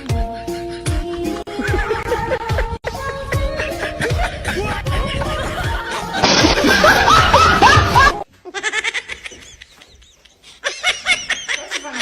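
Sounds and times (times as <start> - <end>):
people laughing: 1.4 - 12.0.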